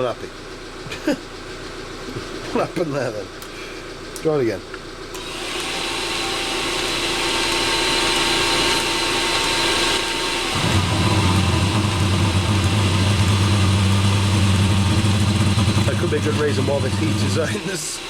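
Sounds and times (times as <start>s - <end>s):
heater fan whirring: 0.0s - 18.0s
deep steady hum: 6.0s - 18.0s.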